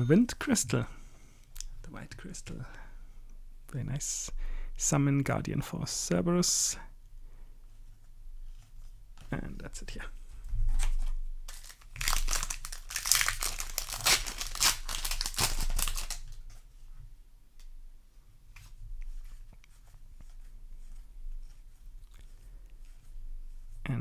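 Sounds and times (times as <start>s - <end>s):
cards being handled: 11.5s - 16.4s
foil wrapper tearing and crinkling: 11.5s - 16.5s.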